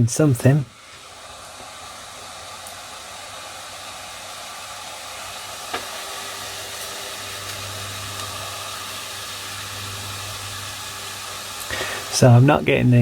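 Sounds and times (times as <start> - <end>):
laptop cooling fan whirring: 0.0 - 13.0.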